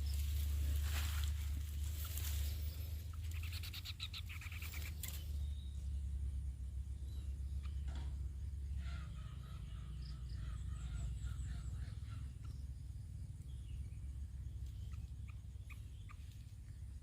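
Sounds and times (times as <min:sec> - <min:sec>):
bird chirping: 0:00.0 - 0:17.0
steady low rumble: 0:00.0 - 0:17.0.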